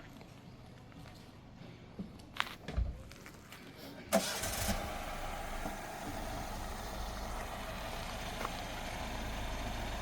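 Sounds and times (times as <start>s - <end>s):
car engine idling: 4.1s - 10.0s.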